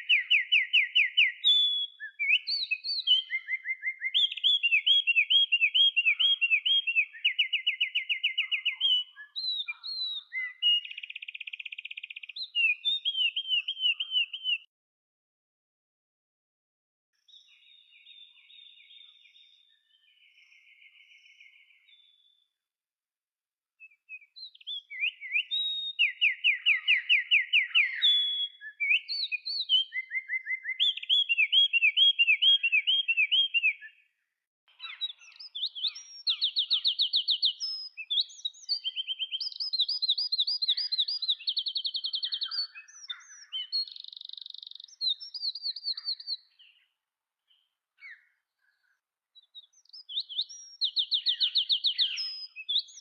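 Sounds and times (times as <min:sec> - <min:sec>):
songbird trilling: 0:00.0 - 0:14.7, 0:24.1 - 0:34.0, 0:34.7 - 0:46.9, 0:47.5 - 0:53.0.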